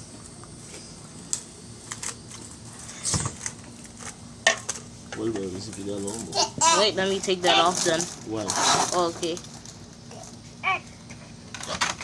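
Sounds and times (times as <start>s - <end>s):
clicks and knocks of objects handled: 1.3s - 6.3s, 11.0s - 12.0s.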